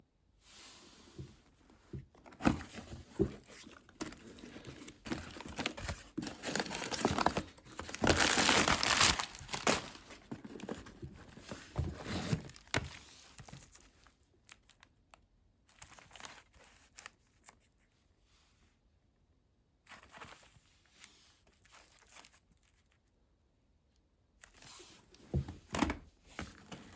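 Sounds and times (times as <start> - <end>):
packaging crinkling: 2.4 - 11.6
packaging ripping: 5.1 - 10.2.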